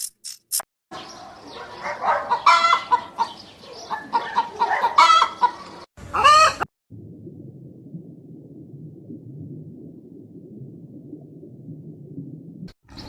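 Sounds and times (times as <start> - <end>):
chickens clucking: 1.8 - 6.7
steady low rumble: 6.9 - 12.7.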